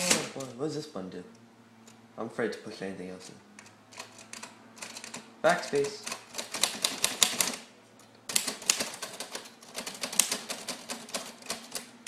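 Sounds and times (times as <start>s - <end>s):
typewriter keys clacking: 4.0s - 7.6s, 8.3s - 11.9s.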